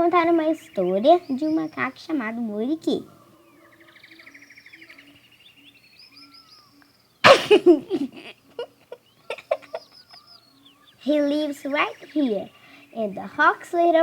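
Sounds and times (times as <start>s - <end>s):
birds chirping and trilling: 0.0s - 14.0s
loud animal call: 3.0s - 11.1s.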